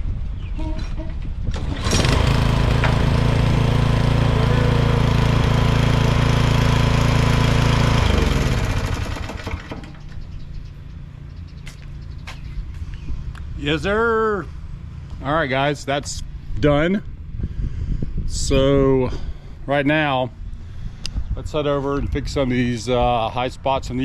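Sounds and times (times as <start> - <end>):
lawn mower engine running: 1.5 - 11.3.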